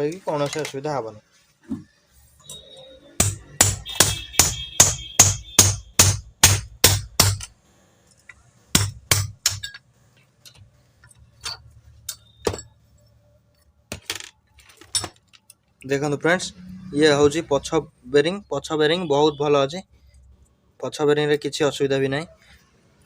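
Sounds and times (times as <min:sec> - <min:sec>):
hammer on metal: 0:03.2 - 0:07.5, 0:08.8 - 0:09.8.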